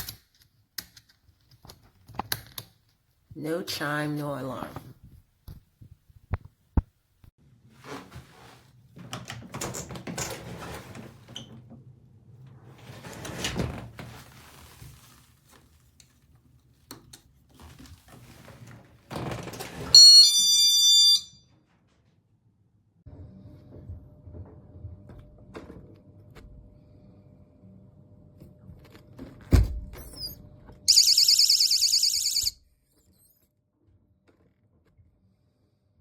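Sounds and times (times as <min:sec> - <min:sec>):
electronic two-tone chime: 0:20.0 - 0:21.4, 0:30.9 - 0:32.5.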